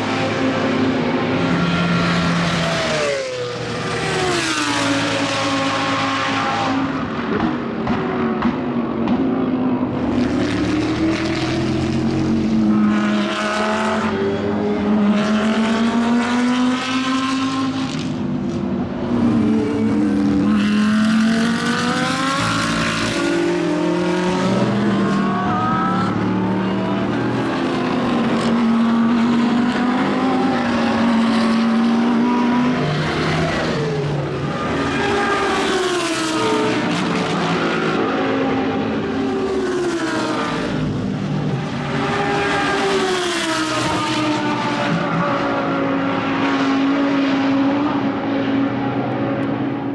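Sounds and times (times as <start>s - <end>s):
race car engine revving: 9.9s - 49.7s.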